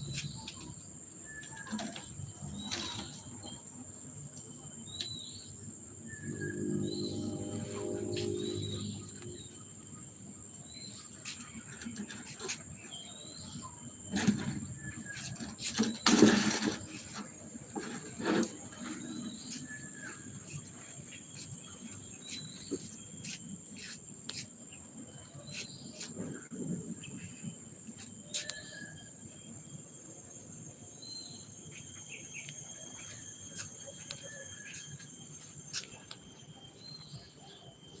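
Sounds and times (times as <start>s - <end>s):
high-pitched insect drone: 0.0s - 14.1s, 18.8s - 38.0s.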